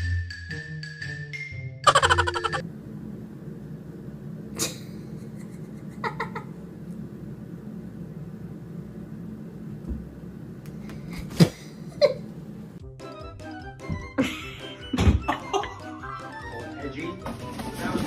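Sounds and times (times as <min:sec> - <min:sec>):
steady low hum: 0:02.3 - 0:12.8.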